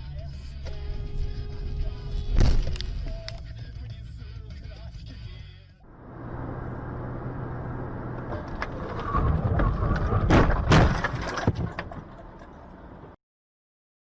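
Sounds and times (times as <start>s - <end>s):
rumble: 5.8s - 13.2s
car driving noise: 5.9s - 13.2s.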